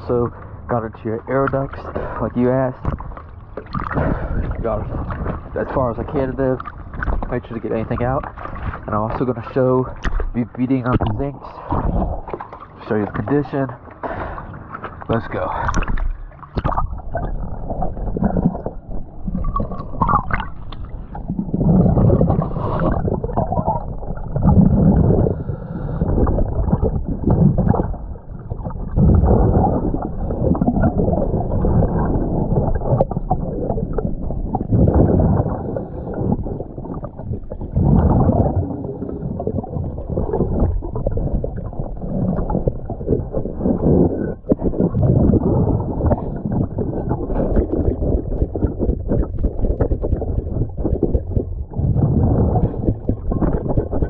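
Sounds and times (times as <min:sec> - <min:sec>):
bubbles gurgling: 0:00.7 - 0:54.0
diver breathing through regulator: 0:03.9 - 0:04.6, 0:14.0 - 0:14.7, 0:21.9 - 0:23.2, 0:24.7 - 0:26.4.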